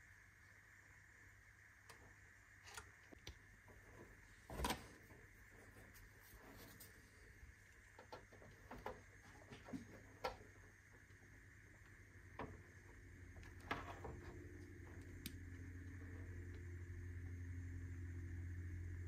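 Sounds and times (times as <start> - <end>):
low hum: 0.0 - 19.0.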